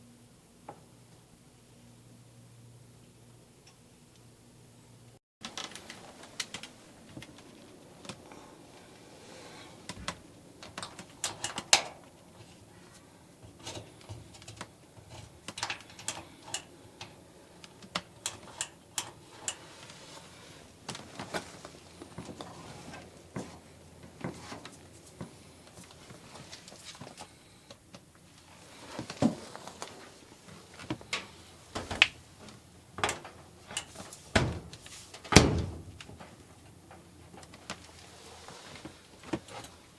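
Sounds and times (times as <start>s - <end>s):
tools and parts clicking and knocking: 9.9s - 12.0s, 13.5s - 17.1s.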